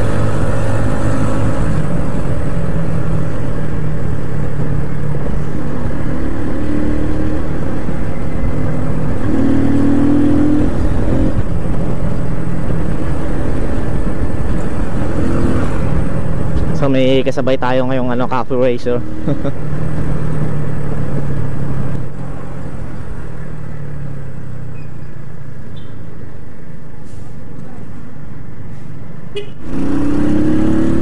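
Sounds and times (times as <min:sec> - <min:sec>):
wind rushing over microphone: 0:00.0 - 0:18.2
motorcycle engine drone: 0:00.0 - 0:26.5.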